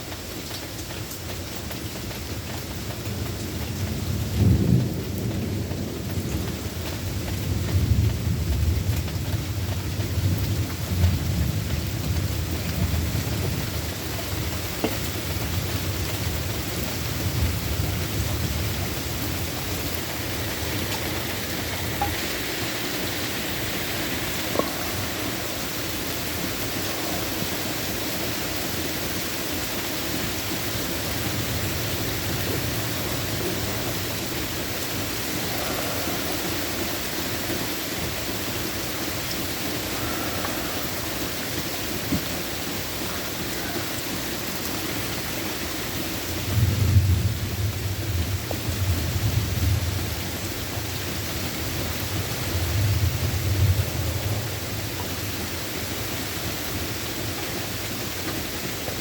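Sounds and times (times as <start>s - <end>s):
steady rain falling: 0.0s - 59.0s
thunder rolling: 3.9s - 42.9s, 52.1s - 55.3s
sharp drips: 14.0s - 45.7s.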